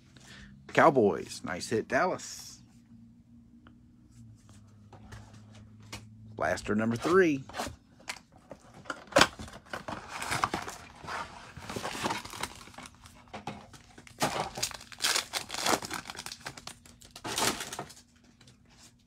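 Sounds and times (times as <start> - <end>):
foil wrappers crinkling and tearing: 11.6 - 13.2, 13.9 - 18.2.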